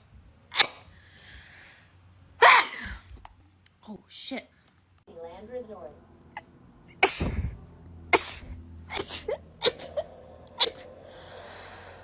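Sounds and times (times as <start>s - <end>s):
person sneezing: 0.6s - 0.9s, 2.4s - 3.2s, 7.0s - 7.6s, 8.2s - 10.9s.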